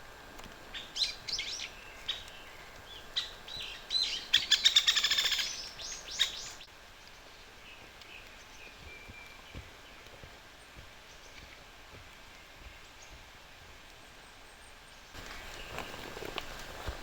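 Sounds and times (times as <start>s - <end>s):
songbird chirping and trilling: 0.7s - 11.6s
faint distant bird chirping: 0.7s - 16.4s.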